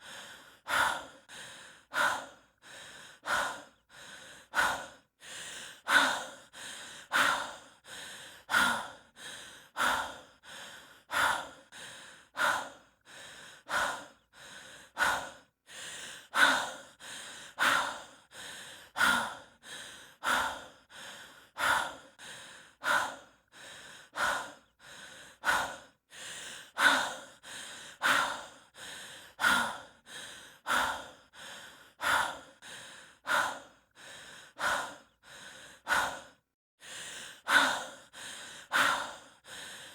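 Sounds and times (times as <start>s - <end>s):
person breathing heavily: 0.0s - 39.9s.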